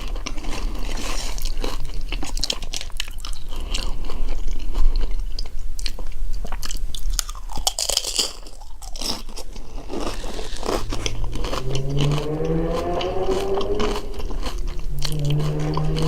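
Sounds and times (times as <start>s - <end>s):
chips crunching while chewed: 0.0s - 16.0s
low rising hum: 10.5s - 16.0s.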